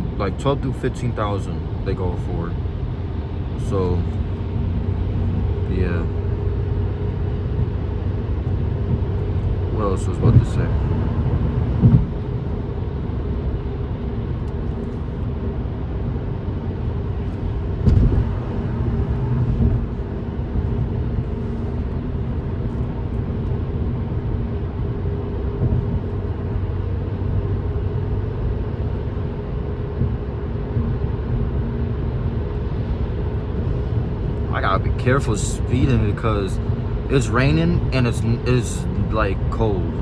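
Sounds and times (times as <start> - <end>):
car engine and tyre noise: 0.0 - 40.0.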